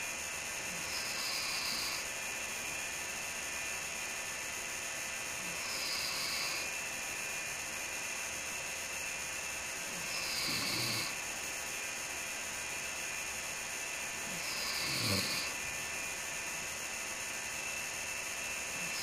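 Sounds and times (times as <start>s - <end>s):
steady background hiss: 0.0s - 19.0s
man snoring: 0.7s - 2.1s, 5.4s - 6.7s, 9.9s - 11.2s, 14.2s - 15.6s, 18.8s - 19.0s.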